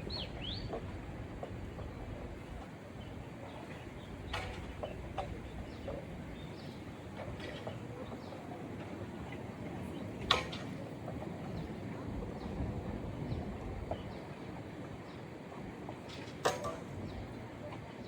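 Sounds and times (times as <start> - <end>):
steady low outdoor noise: 0.0 - 18.0.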